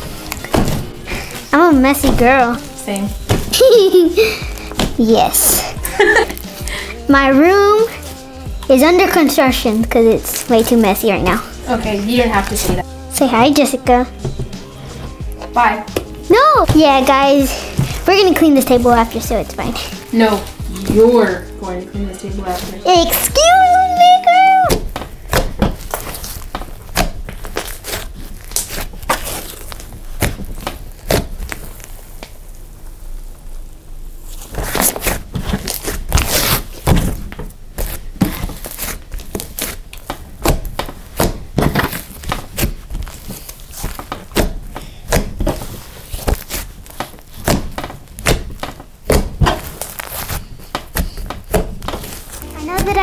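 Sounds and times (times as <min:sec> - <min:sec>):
slime squished by hand: 0:24.8 - 0:32.5, 0:34.2 - 0:53.0.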